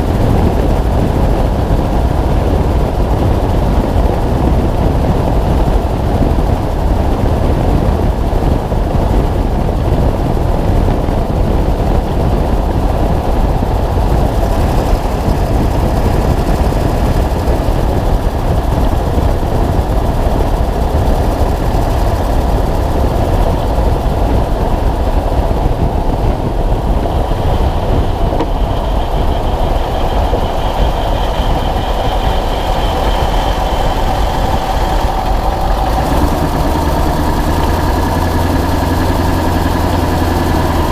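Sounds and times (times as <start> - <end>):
diesel truck engine running: 0.0 - 40.9
road and wind noise: 0.0 - 40.9.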